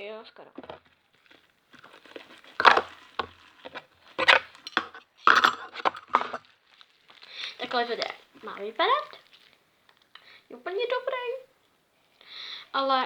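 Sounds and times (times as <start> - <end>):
slime squelching: 1.8 - 5.0.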